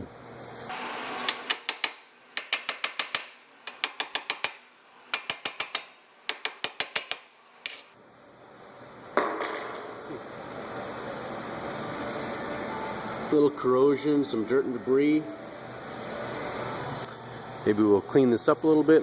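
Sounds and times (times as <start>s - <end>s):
hand ratchet clicking: 0.7s - 8.0s.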